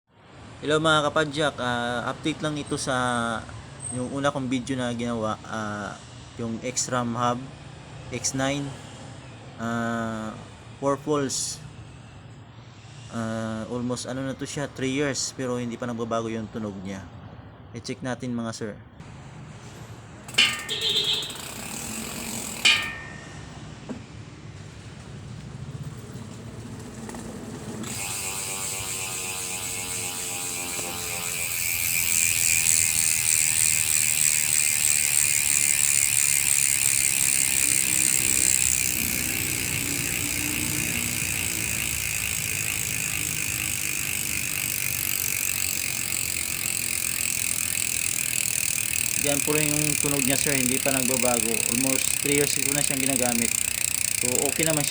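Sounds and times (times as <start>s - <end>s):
bicycle hub ratchet buzz: 20.2s - 23.6s, 25.2s - 54.9s.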